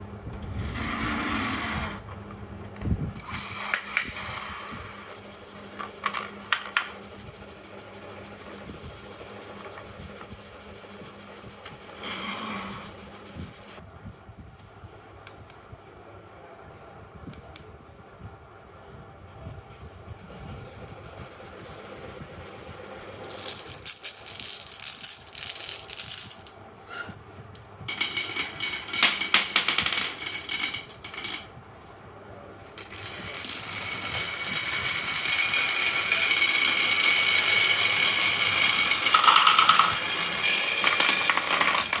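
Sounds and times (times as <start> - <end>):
marbles rolling and clattering: 23.2 - 26.6, 27.5 - 31.5, 32.8 - 42.0.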